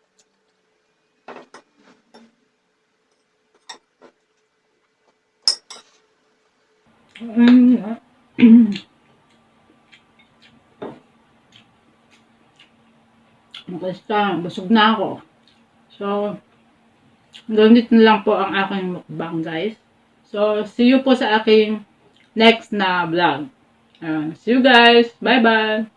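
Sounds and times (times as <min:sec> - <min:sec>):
cutlery clinking on a plate: 0:05.4 - 0:06.0.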